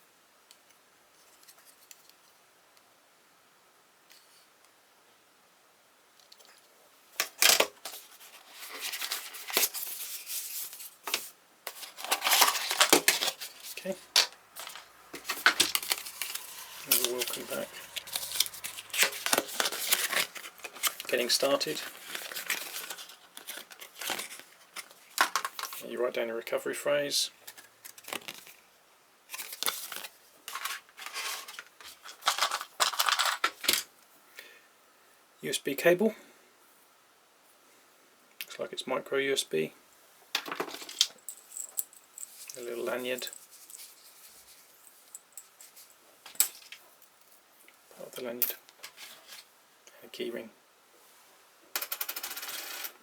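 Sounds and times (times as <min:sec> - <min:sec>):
cardboard packaging rustling: 0:07.3 - 0:25.8, 0:27.4 - 0:28.6, 0:29.3 - 0:33.8.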